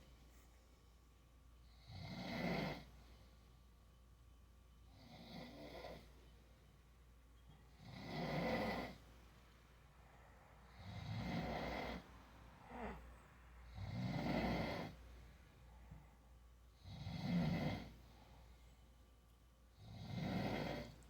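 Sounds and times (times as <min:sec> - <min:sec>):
man snoring: 0:01.8 - 0:02.9, 0:07.8 - 0:09.0, 0:10.7 - 0:12.1, 0:13.7 - 0:15.0, 0:16.9 - 0:18.0, 0:19.8 - 0:21.0.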